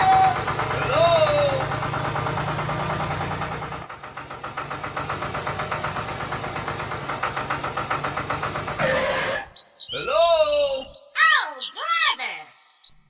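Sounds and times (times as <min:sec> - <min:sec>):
small engine chugging: 0:00.0 - 0:09.0.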